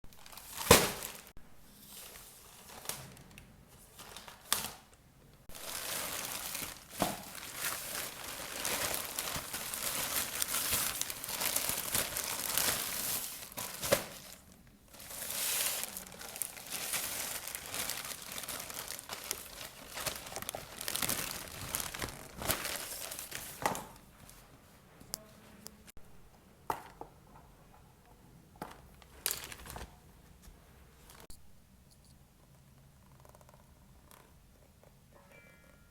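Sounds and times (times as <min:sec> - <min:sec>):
packaging crinkling: 0:00.1 - 0:01.3, 0:05.5 - 0:24.0
packaging tearing: 0:05.6 - 0:14.4, 0:15.0 - 0:23.4.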